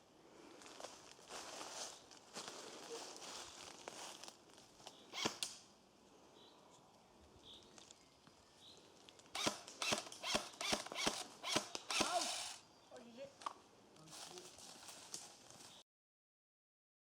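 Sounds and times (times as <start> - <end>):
rustling through undergrowth: 0.4 - 5.4, 14.0 - 15.8.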